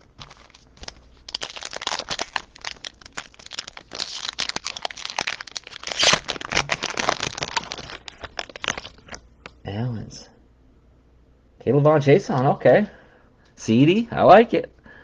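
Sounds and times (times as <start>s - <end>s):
plastic wrapper crinkling: 0.0s - 9.6s.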